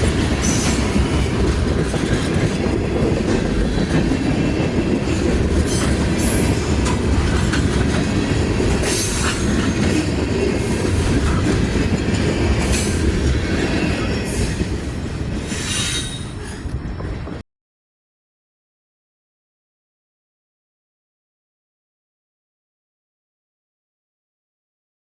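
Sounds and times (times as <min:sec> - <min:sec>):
freight train rumbling past: 0:00.0 - 0:17.4
train wheels squealing: 0:00.4 - 0:01.4, 0:08.8 - 0:11.4, 0:12.7 - 0:16.8.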